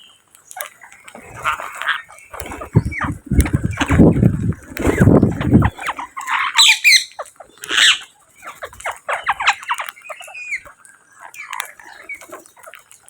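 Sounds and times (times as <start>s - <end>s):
parrots squawking: 4.9s - 12.8s
parrot chirps: 5.8s - 12.7s.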